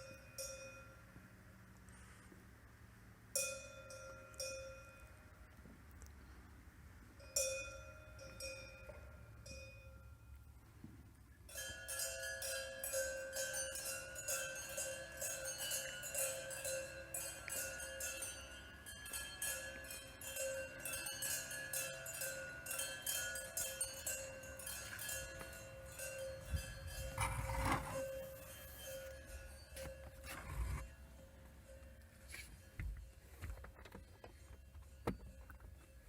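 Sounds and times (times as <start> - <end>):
bell-like ringing tones: 11.5 - 33.4
rapid metallic tinkling: 11.5 - 33.4.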